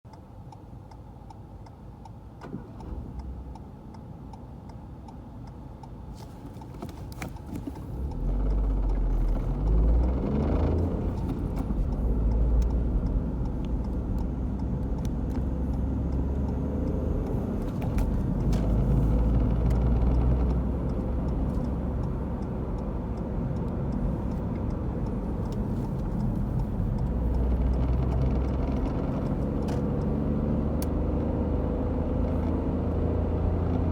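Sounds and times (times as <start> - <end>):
road rumble: 0.1 - 33.9
gear shift clicking: 6.1 - 31.4
car engine accelerating: 6.2 - 33.9.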